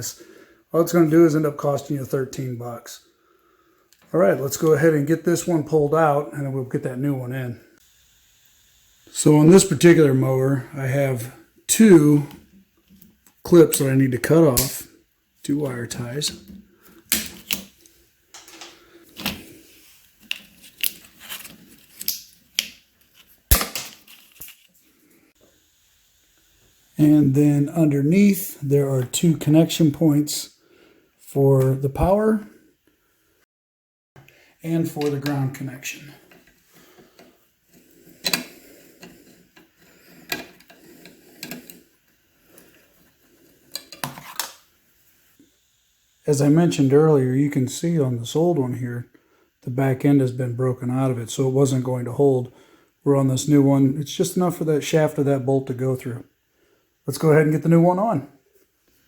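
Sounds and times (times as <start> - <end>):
handling noise: 15.8 - 19.6.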